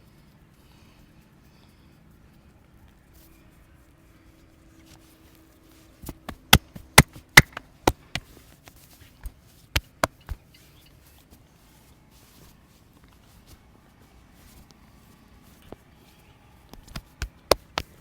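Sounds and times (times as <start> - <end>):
hand slaps on head: 6.0 - 8.3, 9.8 - 10.4, 16.8 - 18.0.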